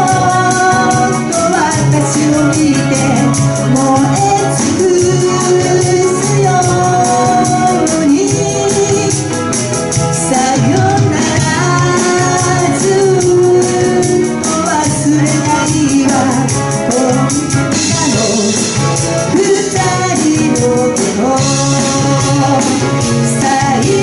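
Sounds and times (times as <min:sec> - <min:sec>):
live pop band playing: 0:00.0 - 0:24.0
person singing: 0:00.0 - 0:24.0.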